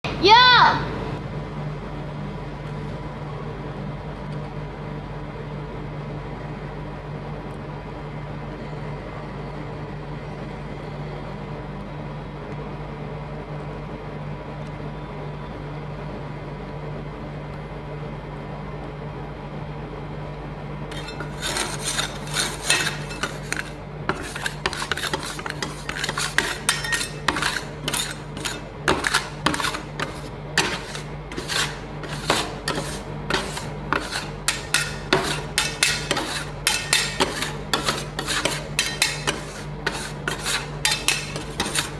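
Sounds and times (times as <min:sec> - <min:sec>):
steady machine hum: 0:20.7 - 0:41.9
metal spatulas scraping steel plate: 0:20.9 - 0:41.9.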